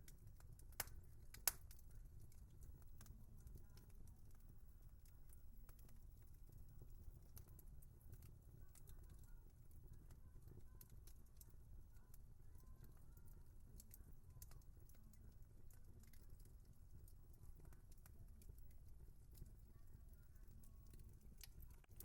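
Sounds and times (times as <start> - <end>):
wood fire crackling: 0.0 - 22.0.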